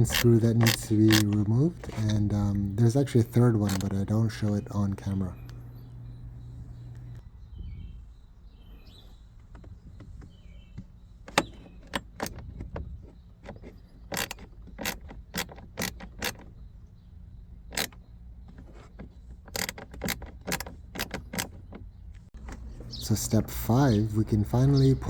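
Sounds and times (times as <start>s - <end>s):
small ratchet clicking: 0.0s - 1.3s, 14.1s - 16.4s, 19.5s - 21.6s.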